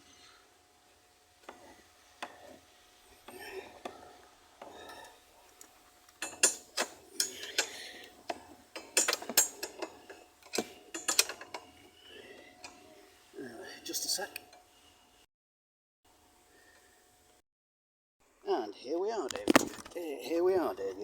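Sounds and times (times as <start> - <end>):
metal spanner clinking on bolts: 6.2 - 7.8, 8.8 - 11.6.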